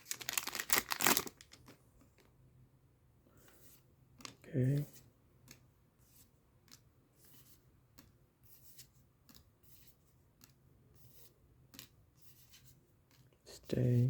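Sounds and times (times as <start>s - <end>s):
trading cards rustling: 0.0s - 2.3s.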